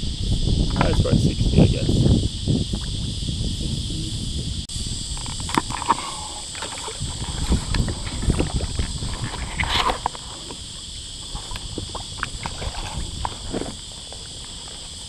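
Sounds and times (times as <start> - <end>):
wind buffeting microphone: 0.0 - 15.0
water lapping against hull: 5.2 - 15.0.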